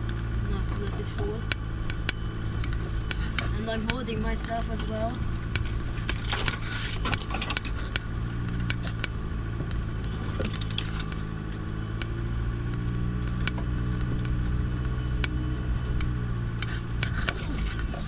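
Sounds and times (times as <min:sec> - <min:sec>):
vehicle engine at low revs: 0:00.0 - 0:18.0.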